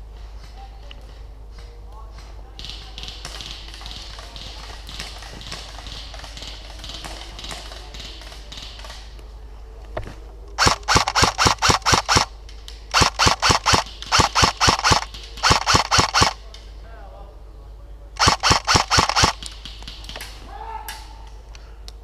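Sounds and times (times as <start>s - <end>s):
airsoft rifle firing rapid shots: 2.6s - 9.1s, 10.6s - 16.4s, 18.2s - 20.4s.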